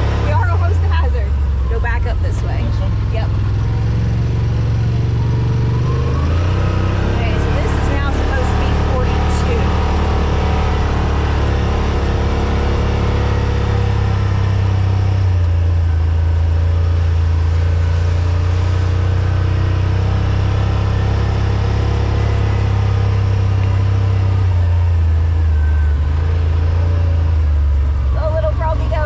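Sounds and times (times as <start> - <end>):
vehicle engine droning: 0.0 - 29.0.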